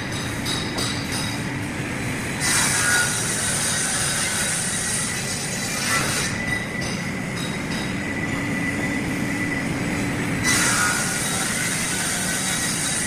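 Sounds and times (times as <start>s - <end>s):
saw running with high whine: 1.1s - 13.0s.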